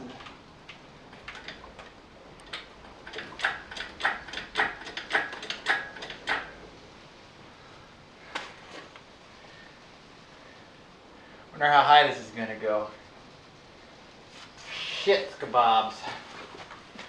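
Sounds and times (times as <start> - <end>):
engine hoist clicking and squeaking: 1.2 - 6.5.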